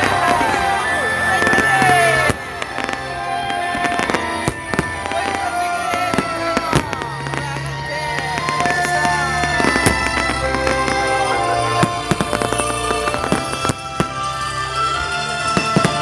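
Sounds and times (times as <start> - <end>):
fireworks bangs and crackles: 0.0 - 16.0
music playing: 0.0 - 16.0.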